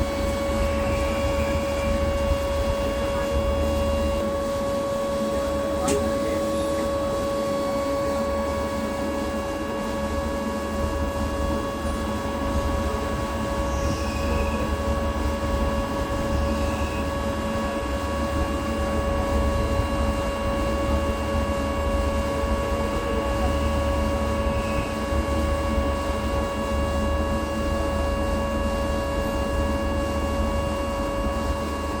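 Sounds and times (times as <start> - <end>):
lathe whining with low rumble: 0.0 - 32.0.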